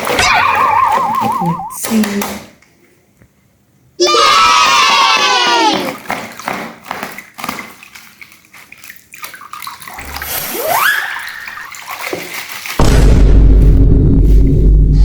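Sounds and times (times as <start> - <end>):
dense wet sound: 0.0 - 1.8, 4.5 - 15.0
slime squishing and sloshing: 5.2 - 12.8.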